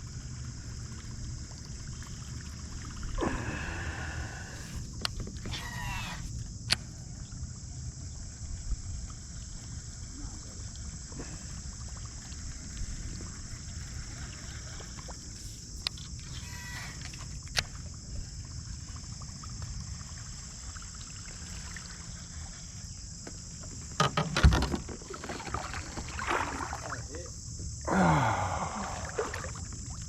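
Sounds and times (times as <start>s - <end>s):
low rumble of water: 0.0s - 30.0s.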